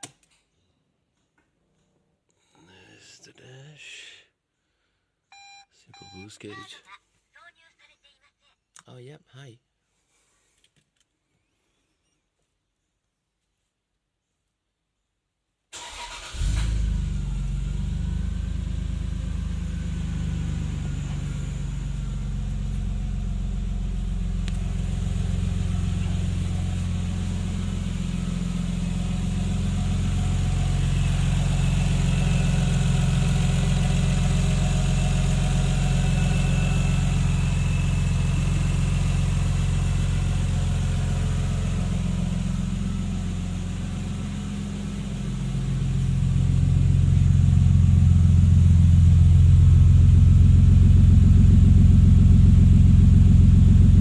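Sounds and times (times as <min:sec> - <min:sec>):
car engine running at low revs: 0:16.3 - 0:54.0.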